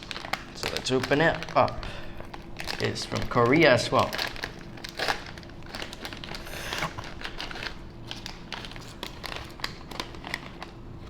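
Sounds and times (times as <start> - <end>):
plastic snack bag crinkling: 0.0 - 11.0.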